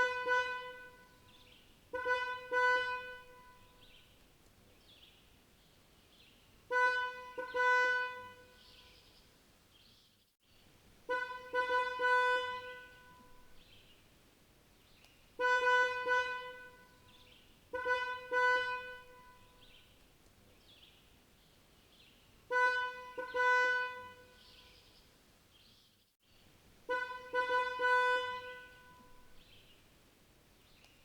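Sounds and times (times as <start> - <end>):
distant car horn honking: 0.0 - 4.0, 6.7 - 8.7, 11.0 - 13.6, 15.4 - 19.8, 22.5 - 24.6, 26.8 - 29.6.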